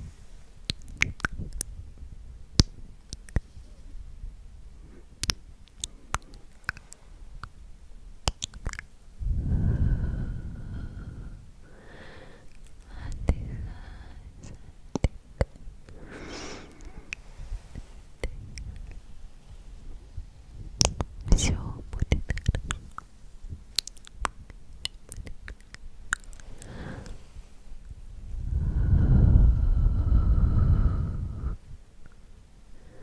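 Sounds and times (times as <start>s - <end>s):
wet mouth clicks: 0.7s - 1.7s, 2.6s - 3.5s, 5.2s - 7.6s, 8.2s - 8.9s, 14.4s - 15.6s, 20.7s - 23.1s, 23.7s - 27.2s
breathy whispering: 9.3s - 19.1s, 21.2s - 22.9s, 25.1s - 31.7s.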